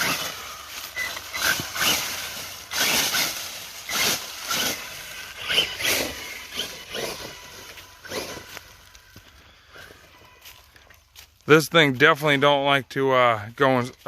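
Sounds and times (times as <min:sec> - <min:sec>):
electric motor whining: 0:00.0 - 0:11.0.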